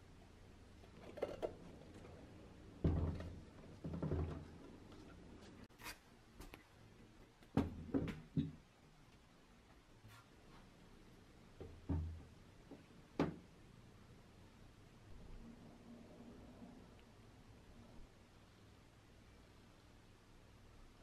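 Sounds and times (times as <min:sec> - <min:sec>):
objects thunking on hard surface: 0:02.8 - 0:05.0.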